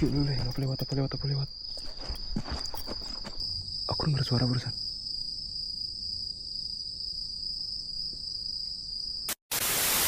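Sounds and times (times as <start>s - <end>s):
insects chirring: 0.0s - 9.4s
loud hiss: 9.3s - 10.0s.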